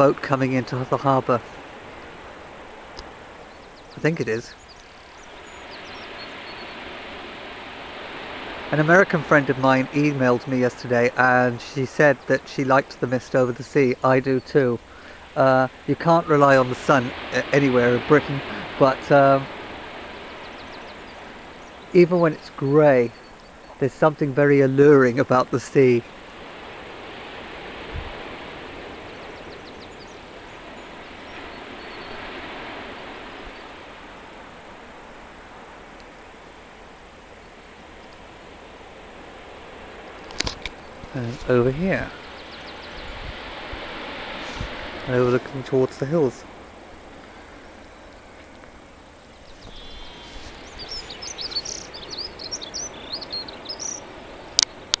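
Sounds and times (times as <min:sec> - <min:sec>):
outdoor background hiss: 0:00.0 - 0:55.0
sea surf washing: 0:00.0 - 0:55.0
wind buffeting microphone: 0:26.1 - 0:36.6, 0:37.2 - 0:55.0
small bird chirping and trilling: 0:49.4 - 0:54.9.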